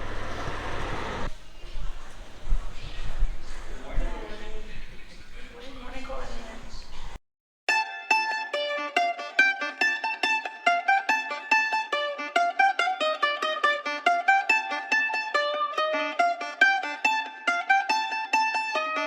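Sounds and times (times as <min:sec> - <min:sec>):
plucked string melody: 0:07.7 - 0:19.0.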